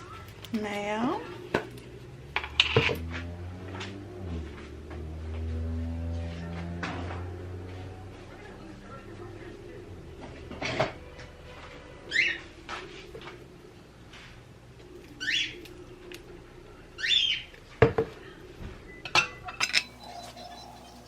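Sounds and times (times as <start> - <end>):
dishes clinking: 19.1 - 20.8.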